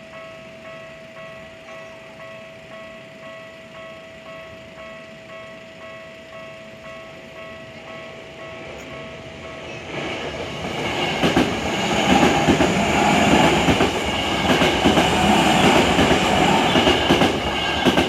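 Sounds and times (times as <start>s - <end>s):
electric train passing: 0.0s - 18.0s
wheels clacking over rail joints: 8.6s - 18.0s.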